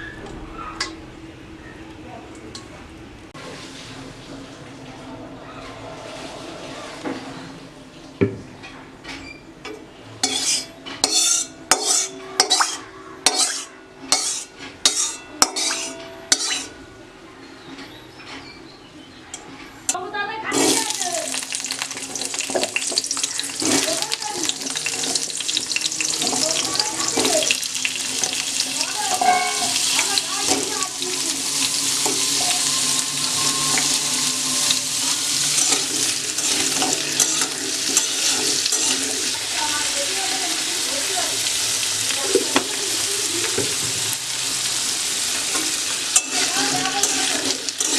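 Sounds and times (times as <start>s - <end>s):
food sizzling in hot oil: 10.2s - 16.7s, 20.5s - 47.9s
metal utensils scraping cookware: 10.2s - 16.8s, 21.6s - 39.8s, 45.3s - 47.9s.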